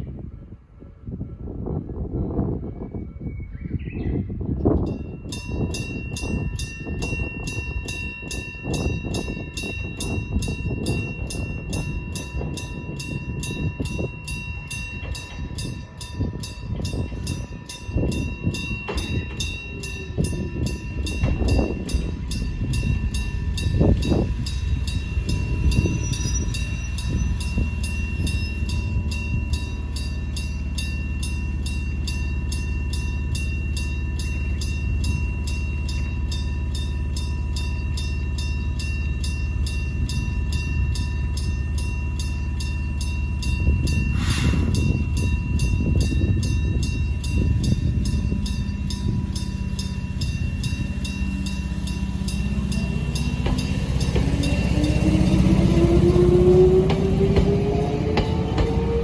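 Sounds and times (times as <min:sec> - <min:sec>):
train rumbling over crossing: 0:00.0 - 0:03.4, 0:04.0 - 0:59.0.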